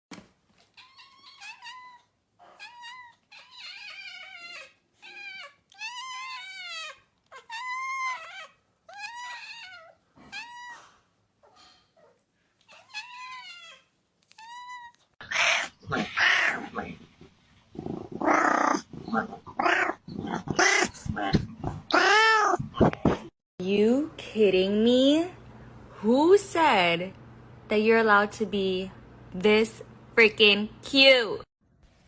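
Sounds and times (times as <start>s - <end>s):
cat meowing: 0.6s - 11.0s, 12.7s - 15.6s.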